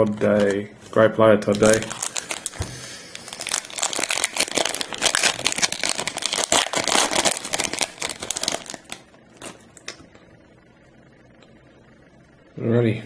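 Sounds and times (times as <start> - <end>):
wrapper tearing and crinkling: 1.5 - 9.6.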